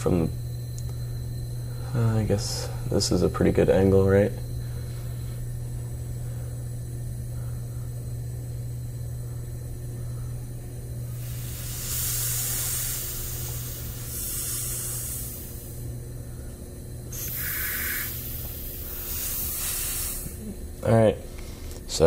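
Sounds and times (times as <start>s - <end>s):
low hum: 0.0s - 21.8s
compressed air hissing: 11.0s - 20.6s.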